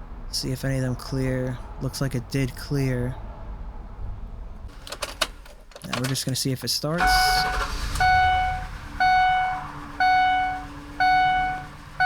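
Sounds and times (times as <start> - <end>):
engine cranking and starting: 4.7 - 6.4, 7.0 - 12.0
dashboard warning chime dinging: 7.0 - 12.0
engine idling quietly: 7.0 - 12.0.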